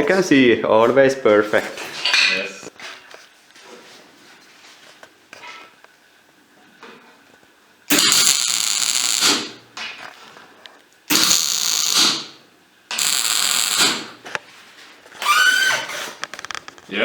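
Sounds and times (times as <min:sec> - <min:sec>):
welding on steel: 0:07.9 - 0:09.6, 0:11.1 - 0:14.2.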